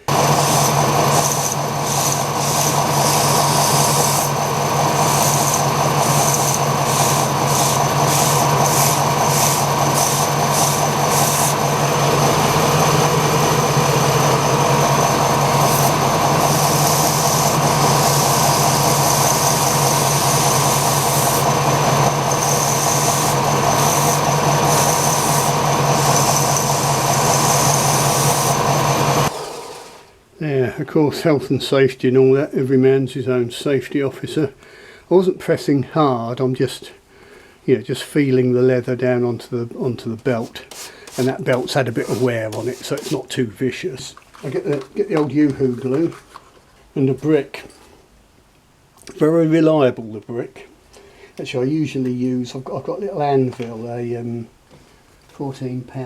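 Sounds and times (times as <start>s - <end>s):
belt sander motor hum: 0.0s - 30.1s, 40.7s - 43.1s
leather scuffing on sanding belt: 40.4s - 43.2s.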